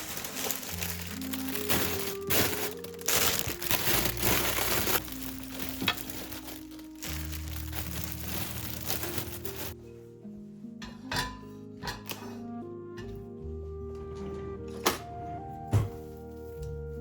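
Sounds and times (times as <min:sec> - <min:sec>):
crinkling and rustling: 0:00.0 - 0:09.8
soft background music: 0:00.0 - 0:17.0.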